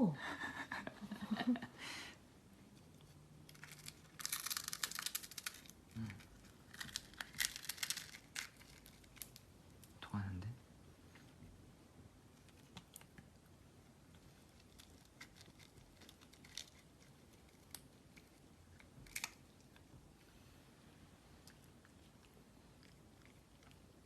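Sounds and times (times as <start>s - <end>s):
cat chewing food: 21.2s - 24.0s.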